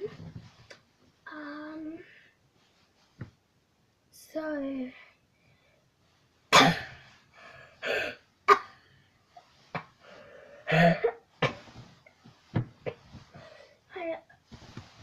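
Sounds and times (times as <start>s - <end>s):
person coughing harshly: 6.5s - 7.0s, 7.8s - 8.8s, 10.7s - 11.6s.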